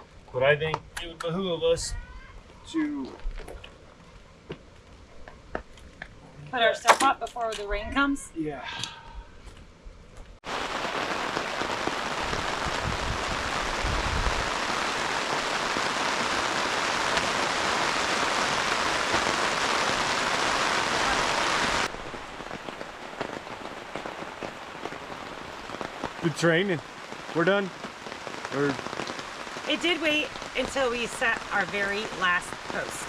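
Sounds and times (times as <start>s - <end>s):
heavy rain pouring: 10.4s - 33.0s.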